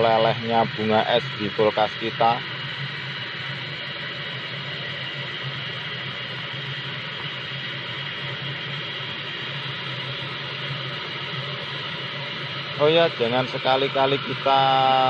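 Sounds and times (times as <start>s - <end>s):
hair dryer blowing air: 0.0s - 15.0s
low motor hum: 0.0s - 15.0s.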